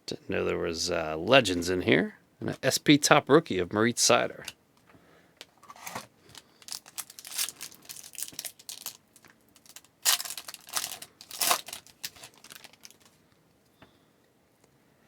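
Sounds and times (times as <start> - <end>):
card pack wrapper tearing: 5.7 - 13.2.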